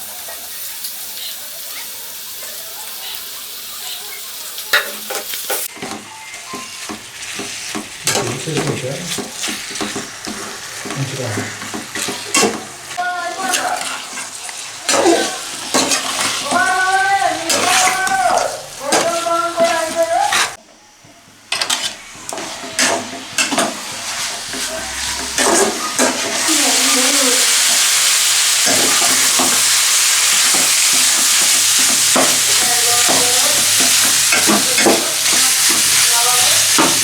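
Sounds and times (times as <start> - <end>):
chicken sizzling in pan: 0.0 - 20.6, 21.2 - 37.0
spoon clattering in pan: 4.6 - 11.0, 28.4 - 37.0.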